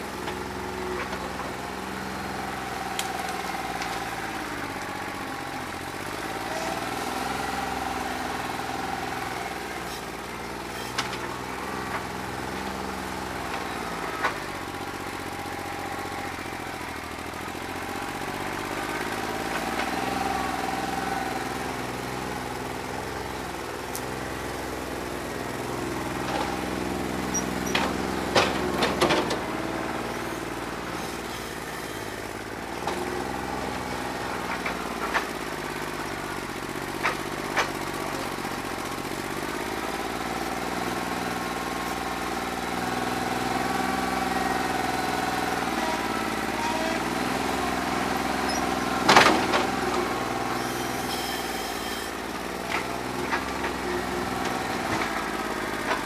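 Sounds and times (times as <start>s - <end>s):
diesel tractor engine running: 0.0s - 56.0s
sharp engine knocks: 27.2s - 29.5s.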